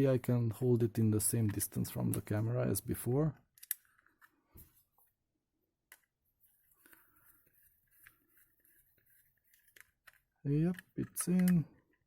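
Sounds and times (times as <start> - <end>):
faint plastic parts ticking: 5.9 - 12.0.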